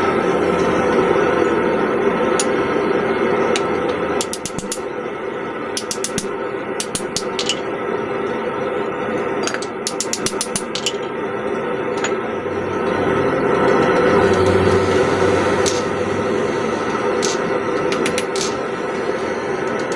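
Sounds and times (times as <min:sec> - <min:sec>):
steady background noise: 0:00.0 - 0:19.9
hammer striking steel on anvil: 0:04.2 - 0:04.8, 0:05.8 - 0:07.6, 0:09.8 - 0:10.8, 0:16.8 - 0:18.6.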